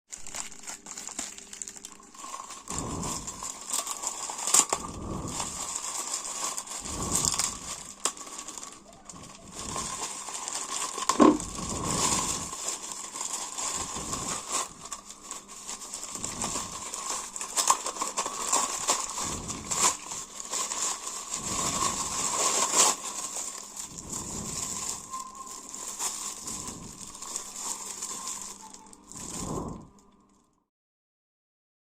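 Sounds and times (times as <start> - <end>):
packaging crinkling and rustling: 0.1 - 30.5.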